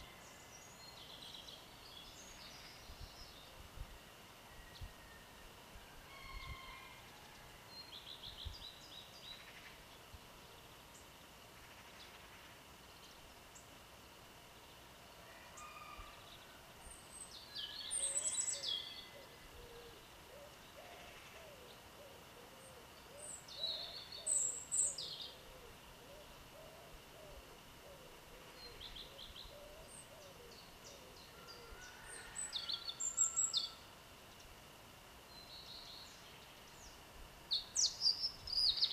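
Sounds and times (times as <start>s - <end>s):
high falling birdsong: 0.0s - 38.9s
songbirds chirping: 0.0s - 38.9s
low wavering bird calls: 15.2s - 33.9s.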